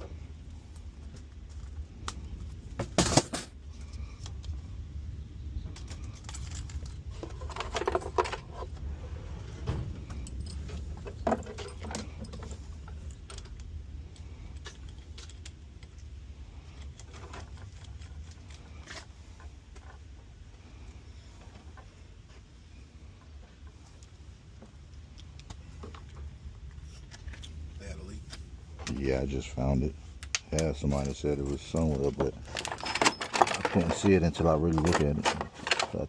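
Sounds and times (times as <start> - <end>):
steady low hum: 0.0 - 36.0
metallic clinks and rattles: 5.7 - 8.8, 9.7 - 20.0, 30.6 - 36.0.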